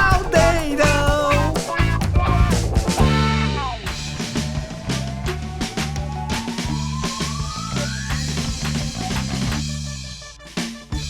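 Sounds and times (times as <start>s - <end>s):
pop-funk backing music: 0.0s - 11.0s.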